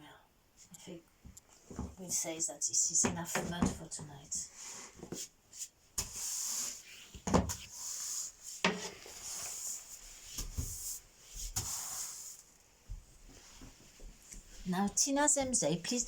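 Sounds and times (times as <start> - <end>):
broom sweeping floor: 4.4 - 16.0.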